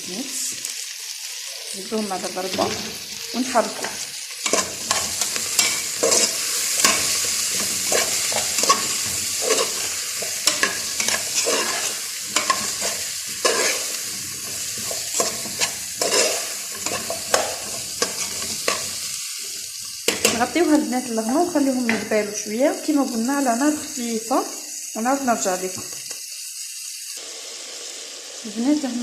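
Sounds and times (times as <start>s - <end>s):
vegetables sizzling in a pot: 0.0s - 29.0s
spoon scraping a pot: 3.8s - 20.5s.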